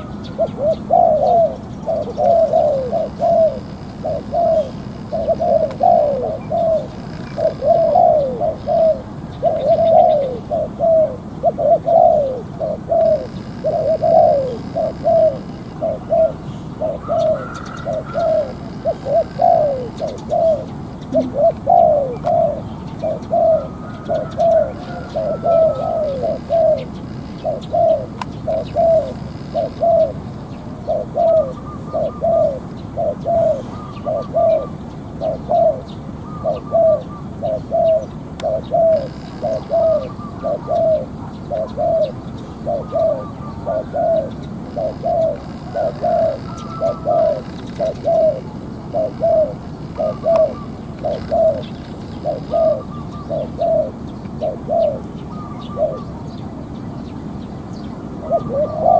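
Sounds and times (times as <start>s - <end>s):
dove cooing: 0.0s - 58.9s
small bird chirping: 0.0s - 58.9s.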